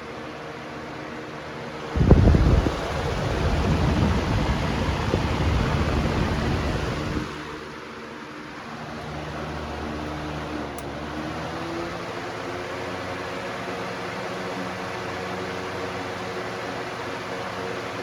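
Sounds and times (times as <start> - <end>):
fan motor hum: 0.0 - 18.0
unbalanced fan rough rumble: 1.8 - 7.9.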